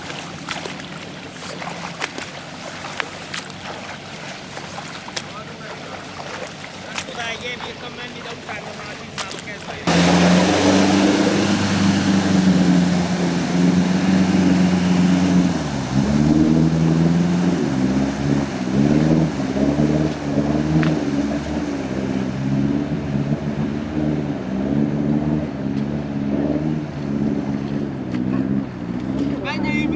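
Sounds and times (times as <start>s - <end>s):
vehicle engine revving: 9.8s - 29.9s.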